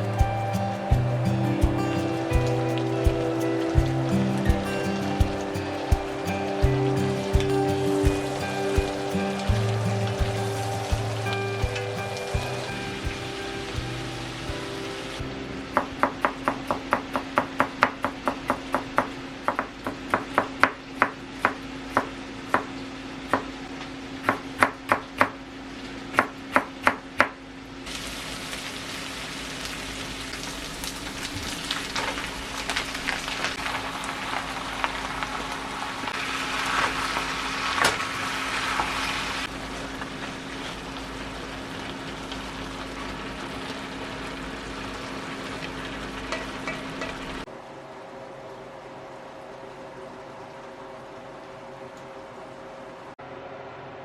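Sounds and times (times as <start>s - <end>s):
food sizzling in a pan: 0.0s - 15.2s, 27.9s - 47.4s
steady hum: 0.0s - 16.5s, 47.4s - 54.0s.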